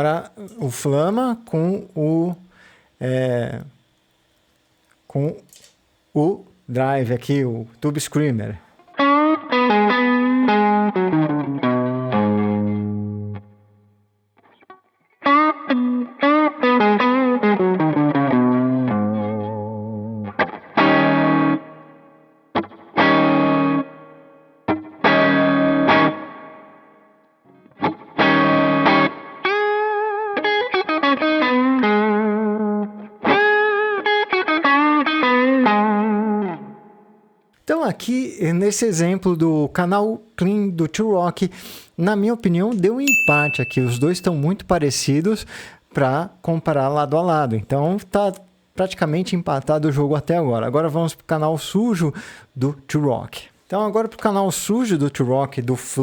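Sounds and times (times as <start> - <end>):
overdriven electric guitar: 8.8 - 37.5.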